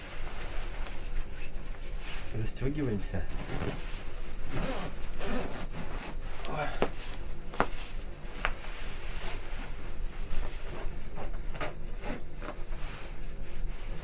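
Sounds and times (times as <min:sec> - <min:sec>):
steady low hum: 0:00.0 - 0:14.0
winter clothing rustling: 0:03.3 - 0:14.0.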